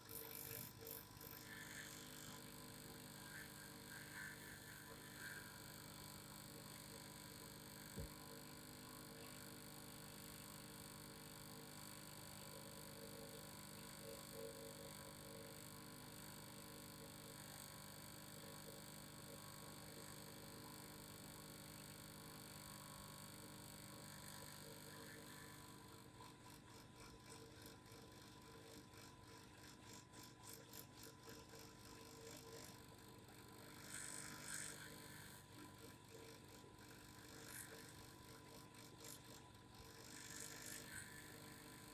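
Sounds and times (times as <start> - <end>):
vibrating device hum: 0.0 - 9.4, 21.4 - 41.9.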